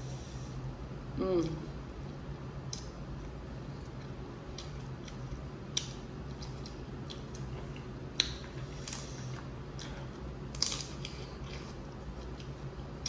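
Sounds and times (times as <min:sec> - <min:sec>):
wet squishing and chewing: 0:02.6 - 0:13.0.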